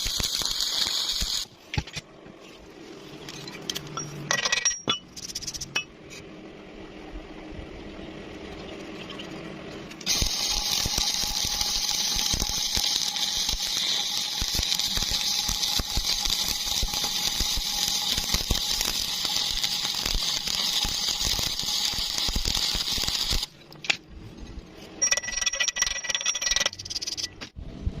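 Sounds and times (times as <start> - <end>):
welding arc crackling and hissing: 0.0 - 1.6, 10.0 - 23.5.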